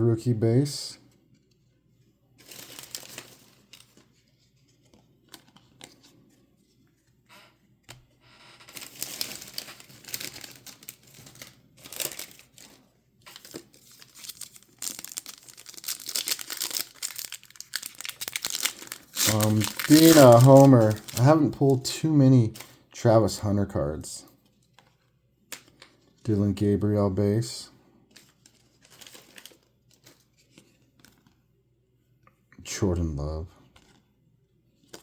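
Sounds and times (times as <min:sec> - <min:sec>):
foil wrapper tearing and crinkling: 0:02.5 - 0:03.8, 0:08.7 - 0:21.6.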